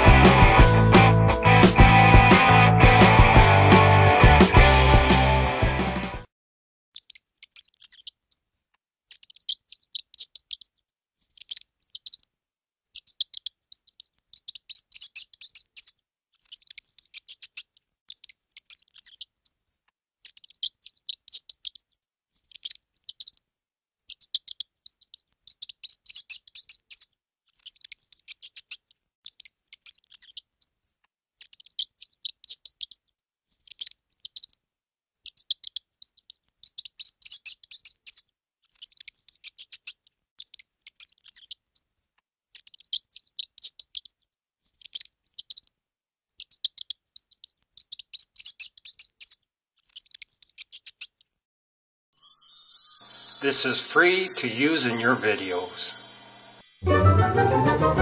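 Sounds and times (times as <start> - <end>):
mouse squeaking: 7.0 - 34.6, 35.2 - 51.3.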